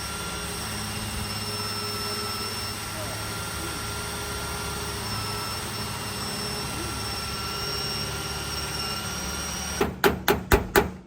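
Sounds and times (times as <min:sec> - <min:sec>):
electric drill whining: 0:00.0 - 0:09.9
sharp knock: 0:09.8 - 0:11.0.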